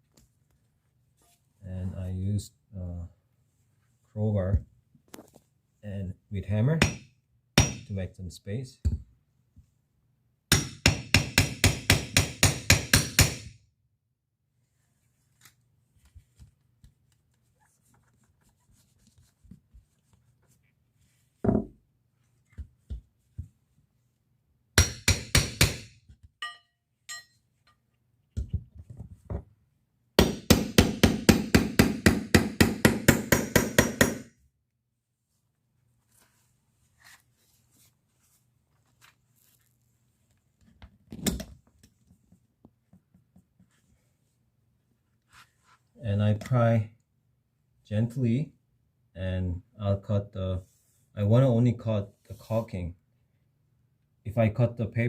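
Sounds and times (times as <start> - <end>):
hammer tapping a crowbar: 24.8 - 27.4.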